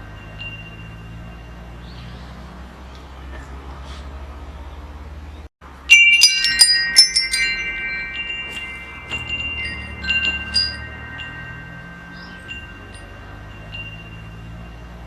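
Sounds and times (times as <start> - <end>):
wind chimes ringing: 0.0 - 2.7, 5.7 - 15.0.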